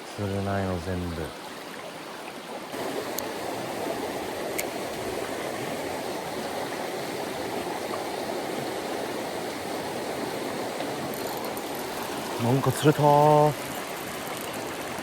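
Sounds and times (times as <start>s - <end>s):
mountain stream rushing: 0.0s - 15.0s
faint sharp high ticks: 4.5s - 4.7s.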